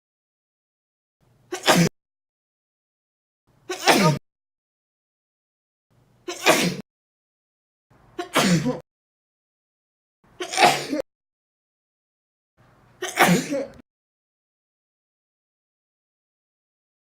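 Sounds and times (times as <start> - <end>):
person sneezing: 1.5 - 1.9, 3.7 - 4.2, 6.3 - 6.8, 8.2 - 8.8, 10.4 - 11.0, 13.0 - 13.8.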